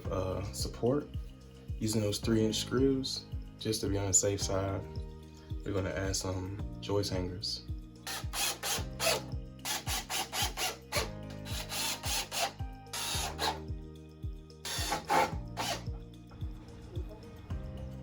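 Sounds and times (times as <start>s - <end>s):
background music with steady beat: 0.0s - 18.0s
power drill driving screws: 8.1s - 13.6s, 14.6s - 15.9s.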